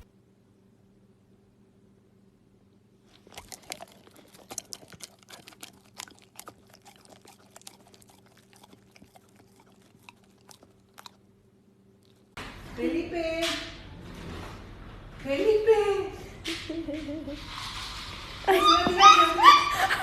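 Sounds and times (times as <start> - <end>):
dog chewing crunchy clicks: 3.1 - 11.2.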